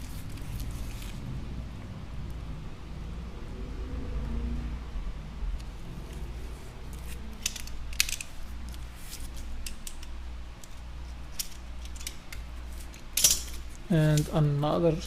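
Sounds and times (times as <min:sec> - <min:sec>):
low steady hum: 0:00.0 - 0:15.0
tape clicks and crinkles: 0:06.8 - 0:14.4.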